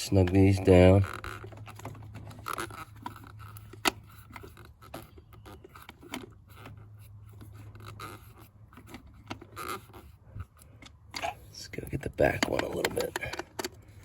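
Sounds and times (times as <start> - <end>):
screwdriver clicks and scrapes: 0.3 - 11.3.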